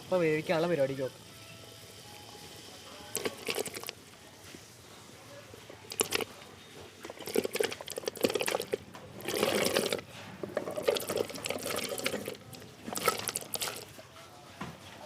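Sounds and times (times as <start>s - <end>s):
water splashing in boiling pot: 3.0s - 4.0s, 5.9s - 6.3s, 6.9s - 13.9s.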